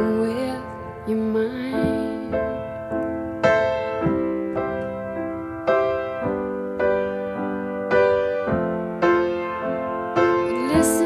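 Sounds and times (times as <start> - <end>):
slow piano chords: 0.0 - 11.0.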